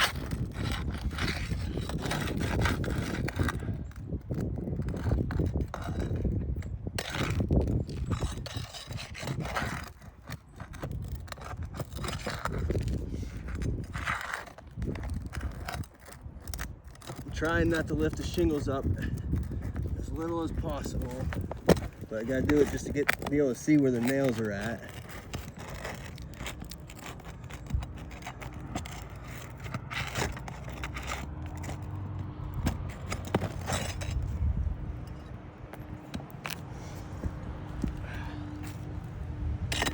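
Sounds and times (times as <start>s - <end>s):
scraping asphalt roof shingles: 0.0s - 39.9s
steady low rumble: 24.8s - 39.9s.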